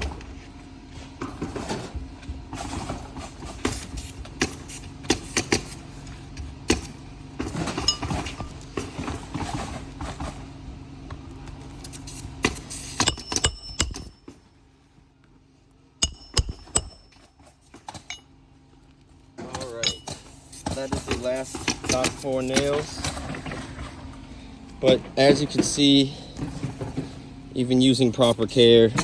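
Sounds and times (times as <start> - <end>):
steady low hum: 0.0 - 29.0
metallic clinks: 19.7 - 20.2.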